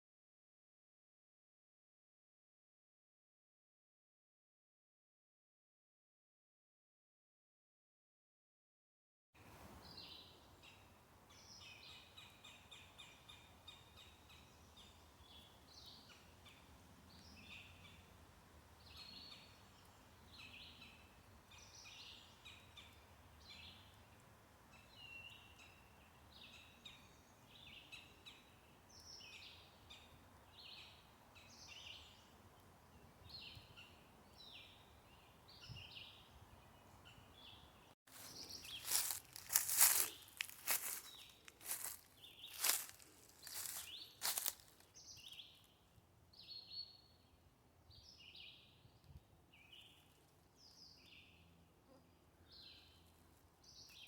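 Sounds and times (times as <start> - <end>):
faint bird chirps: 33.3 - 44.6.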